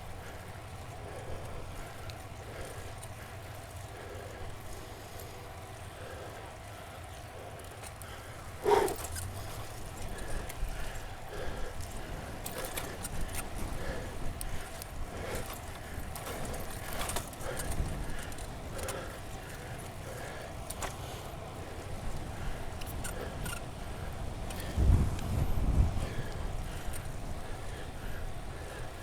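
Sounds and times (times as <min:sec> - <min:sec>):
person gasping for breath: 0:08.1 - 0:09.1.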